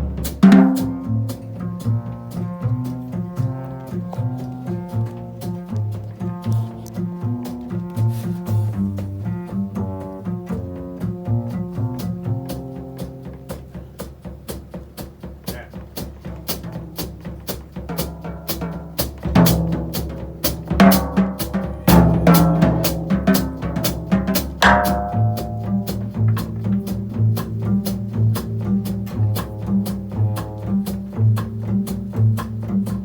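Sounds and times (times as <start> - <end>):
loud accented drum hits: 0.0 - 1.4, 13.7 - 30.6
double bass: 0.0 - 33.0
drum kit snare and cymbals: 0.0 - 33.0.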